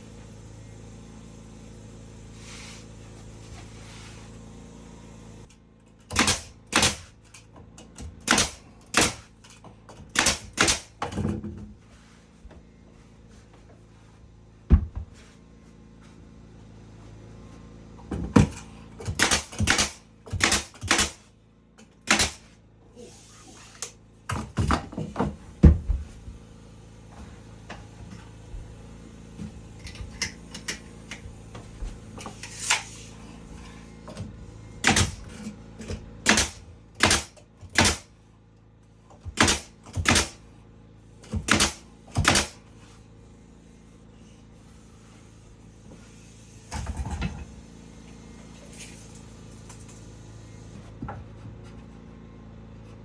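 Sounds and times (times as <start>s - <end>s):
hammer striking wood: 39.4s - 40.4s, 41.4s - 42.6s.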